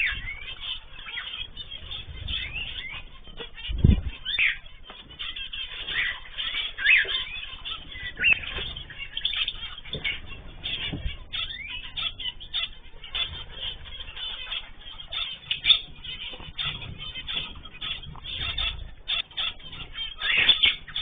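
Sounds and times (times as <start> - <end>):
cage birds chirping and calling: 0.0 - 21.0
brief low thumps: 3.7 - 4.2.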